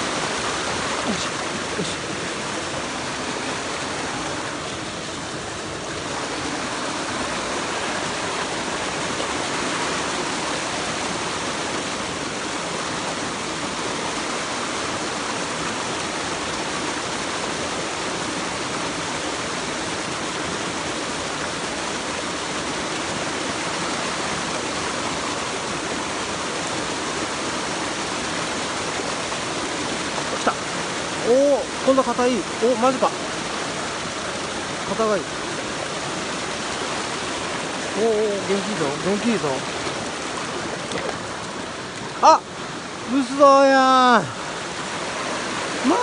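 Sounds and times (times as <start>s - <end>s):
water rushing over rocks: 0.0s - 46.0s.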